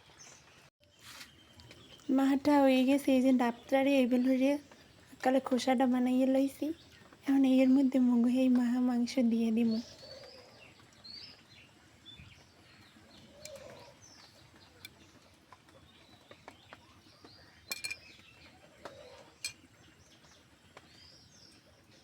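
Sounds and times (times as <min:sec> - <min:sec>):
faint birds chirping: 0:00.0 - 0:22.0
utensil clinking on coconut shell: 0:17.7 - 0:18.1.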